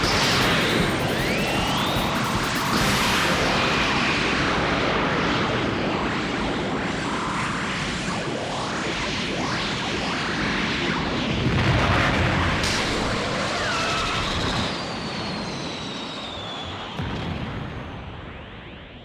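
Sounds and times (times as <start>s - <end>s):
loud boom: 0.0s - 5.8s
rushing blast with pitch glides: 0.0s - 16.8s
falling whistle-like tones: 13.4s - 17.0s.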